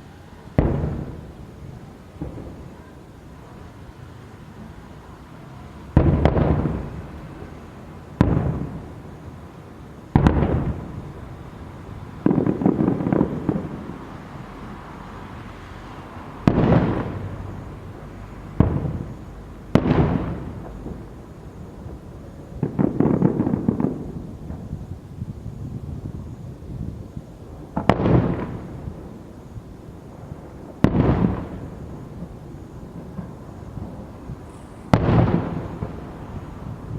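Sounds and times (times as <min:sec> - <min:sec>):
crackling firework salvos: 0:00.0 - 0:36.9
firework bangs with rumble: 0:00.6 - 0:01.4, 0:02.2 - 0:02.8, 0:05.9 - 0:07.2, 0:08.2 - 0:09.0, 0:10.0 - 0:11.2, 0:12.1 - 0:14.0, 0:16.4 - 0:17.5, 0:18.6 - 0:27.0, 0:27.6 - 0:29.2, 0:30.2 - 0:36.9.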